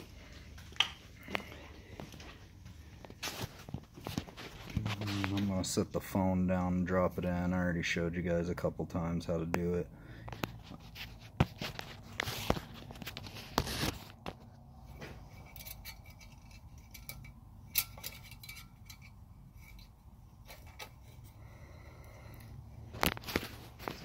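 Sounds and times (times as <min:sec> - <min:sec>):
clicks and scrapes of handling tools: 0:10.3 - 0:21.4.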